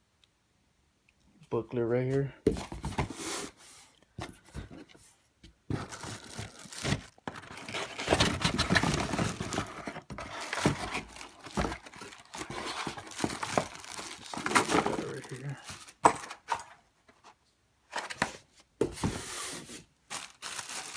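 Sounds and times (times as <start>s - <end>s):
packaging rustling and crinkling: 5.7s - 16.8s, 18.0s - 20.9s.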